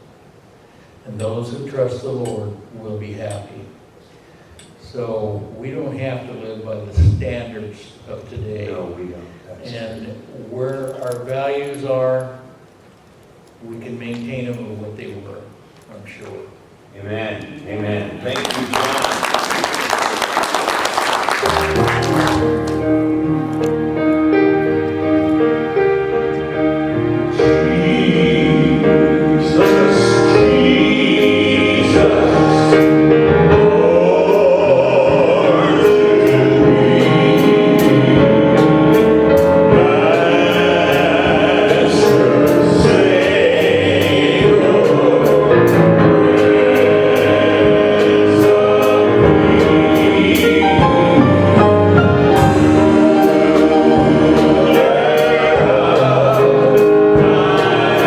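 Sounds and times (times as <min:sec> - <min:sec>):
gospel choir with instruments: 0:17.4 - 0:58.0.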